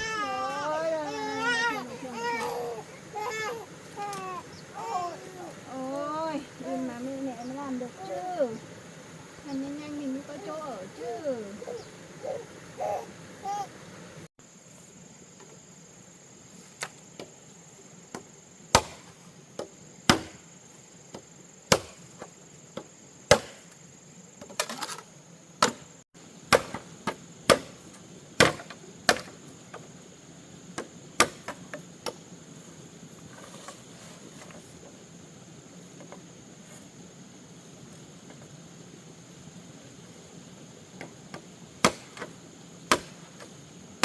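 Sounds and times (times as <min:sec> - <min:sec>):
blade chopping bamboo: 0:18.7 - 0:19.1, 0:20.1 - 0:20.4, 0:21.7 - 0:22.0, 0:23.3 - 0:23.7, 0:26.5 - 0:27.8, 0:28.4 - 0:29.3, 0:31.2 - 0:31.6, 0:41.8 - 0:42.3, 0:42.9 - 0:43.2.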